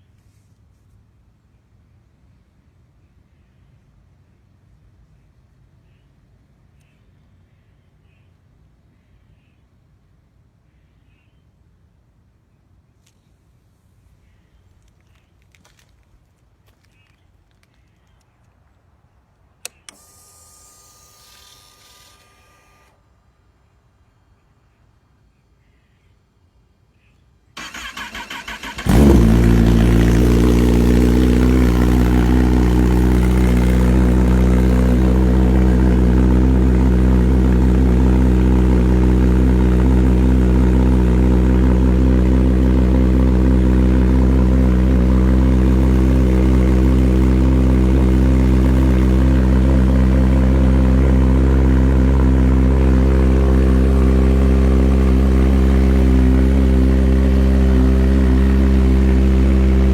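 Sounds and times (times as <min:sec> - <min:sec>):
motorcycle engine idling: 0:27.7 - 0:59.9.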